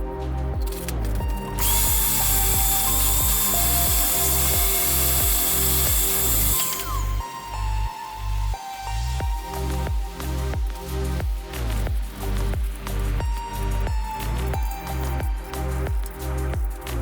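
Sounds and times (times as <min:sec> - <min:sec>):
music with pulsing beat: 0:00.0 - 0:17.0
power tool high hiss: 0:01.6 - 0:07.2.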